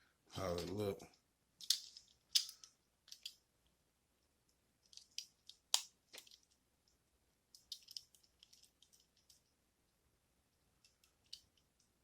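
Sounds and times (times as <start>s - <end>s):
toy car parts clicking: 1.6s - 3.4s, 7.5s - 9.4s.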